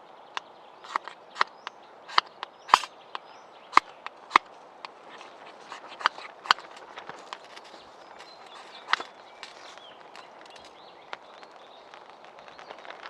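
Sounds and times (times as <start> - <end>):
wood snapping and cracking: 3.8 - 13.0.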